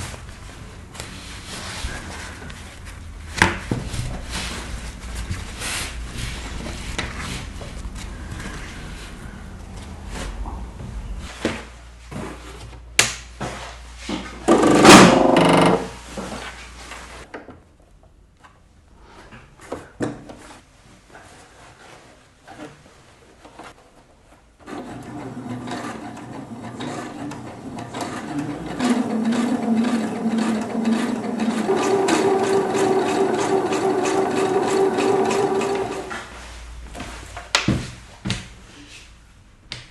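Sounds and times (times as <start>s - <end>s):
sewing machine stitching: 24.6s - 36.2s.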